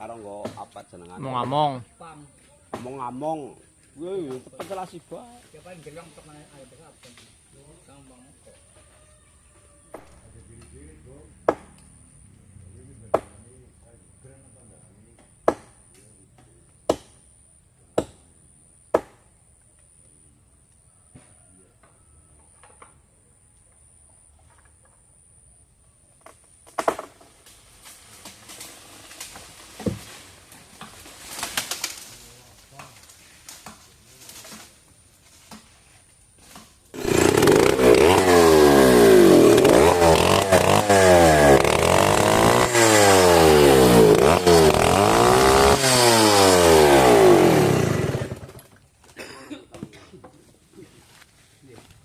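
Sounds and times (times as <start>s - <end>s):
chainsaw engine revving: 36.9s - 48.7s.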